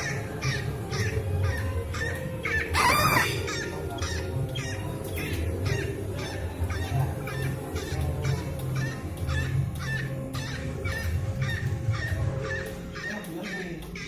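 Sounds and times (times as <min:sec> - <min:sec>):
cockatoo squawking: 0:00.0 - 0:14.0
cockatoo screaming: 0:01.5 - 0:04.2.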